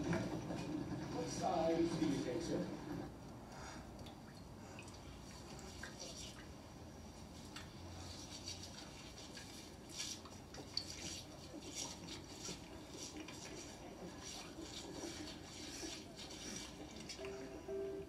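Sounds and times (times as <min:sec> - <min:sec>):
toothbrush scrubbing teeth: 0:07.2 - 0:17.5.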